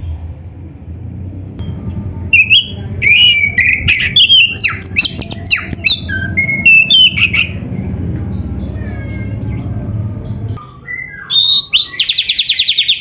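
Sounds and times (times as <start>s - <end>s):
low hum: 0.0s - 11.0s
bird singing whistled notes: 2.2s - 8.0s, 10.6s - 13.0s.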